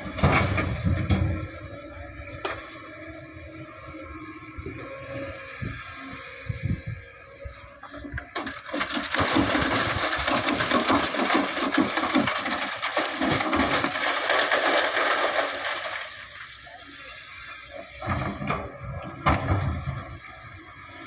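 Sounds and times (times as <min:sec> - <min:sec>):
sand pouring into truck bed: 0:08.6 - 0:17.7.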